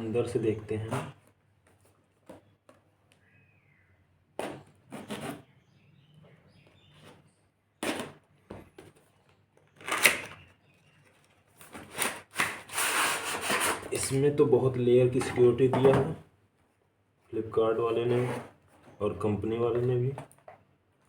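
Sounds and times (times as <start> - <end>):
packaging rustling and scraping: 6.8 - 14.2.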